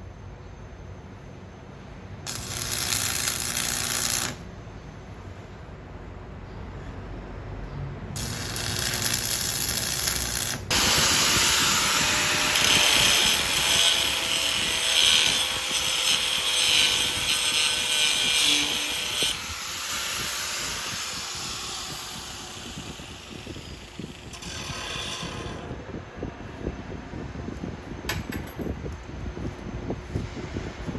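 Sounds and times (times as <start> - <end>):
power grinder grinding metal: 2.3 - 4.4, 8.2 - 25.7.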